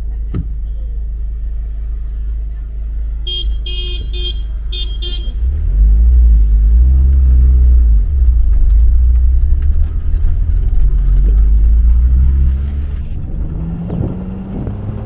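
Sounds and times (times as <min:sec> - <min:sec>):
car horn toots: 0:03.3 - 0:05.5
vehicle engine accelerating: 0:04.5 - 0:15.0.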